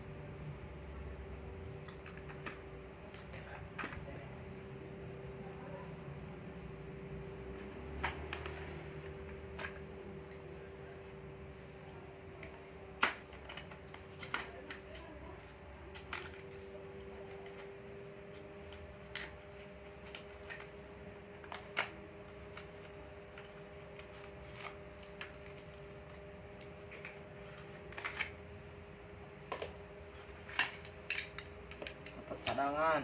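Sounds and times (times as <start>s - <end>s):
faint hum: 0.0s - 33.0s.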